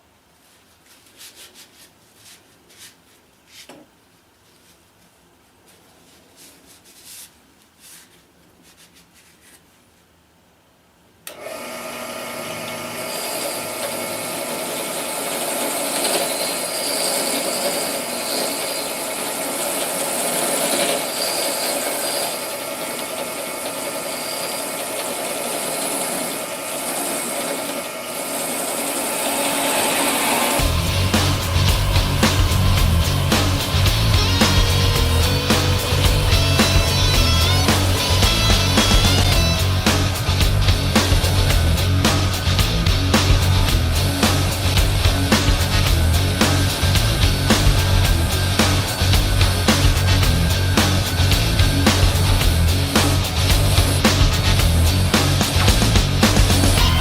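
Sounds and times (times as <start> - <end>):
power tool grinding metal: 12.4 - 57.0.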